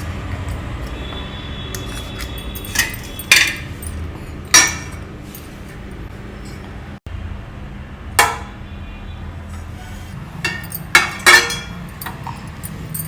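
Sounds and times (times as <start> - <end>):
metal utensils clinking on plate: 1.7 - 6.7, 10.4 - 13.0.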